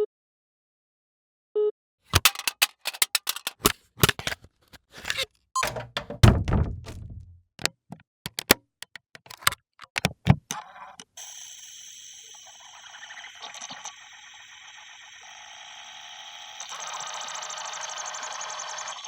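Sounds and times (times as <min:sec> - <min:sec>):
mechanical clicks and knocks: 0:02.1 - 0:10.6
heavy ringing thunk: 0:05.6 - 0:07.3.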